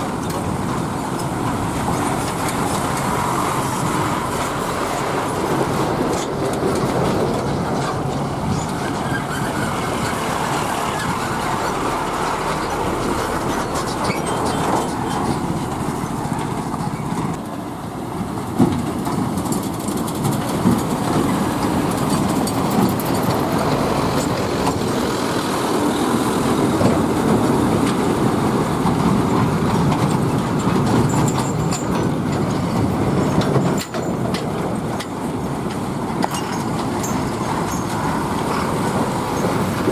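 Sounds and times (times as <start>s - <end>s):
heavy trucks rumbling: 0.0s - 39.9s.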